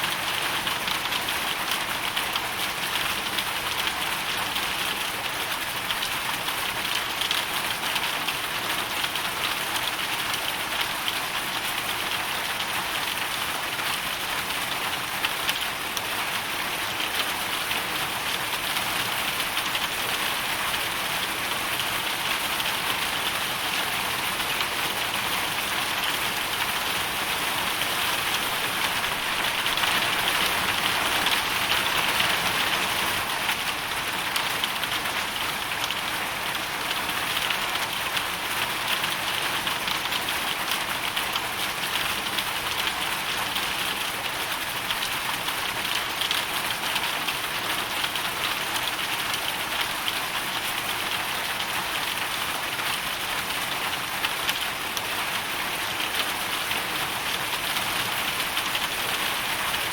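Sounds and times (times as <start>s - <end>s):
hail and rain striking surface: 0.0s - 59.9s.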